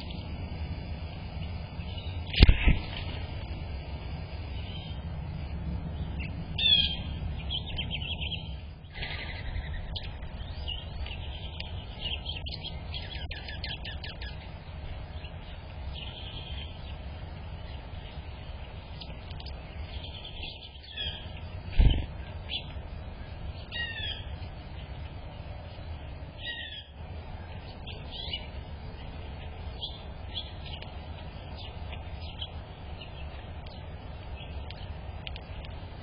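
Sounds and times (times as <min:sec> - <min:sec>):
small birds chirping: 0:00.0 - 0:36.0.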